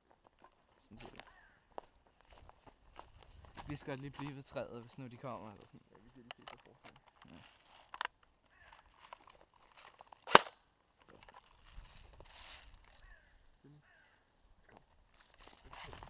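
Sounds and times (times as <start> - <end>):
airsoft gun shot: 10.3 - 10.6.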